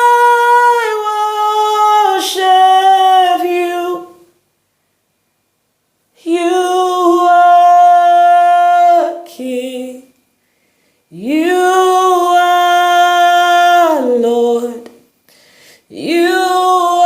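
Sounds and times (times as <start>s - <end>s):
person singing unaccompanied: 0.0s - 4.4s, 6.2s - 10.2s, 11.1s - 15.0s, 15.9s - 17.0s.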